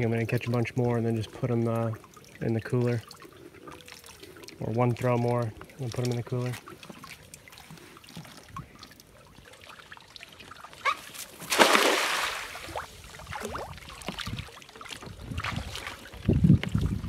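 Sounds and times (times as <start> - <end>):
water splash: 2.1 - 17.0
water dripping and knocking: 13.3 - 17.0.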